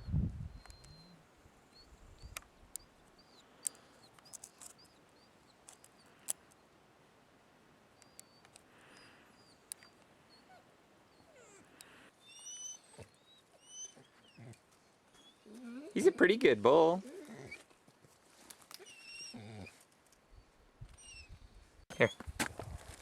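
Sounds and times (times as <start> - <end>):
small birds chirping: 0.0 - 6.8, 7.9 - 17.7.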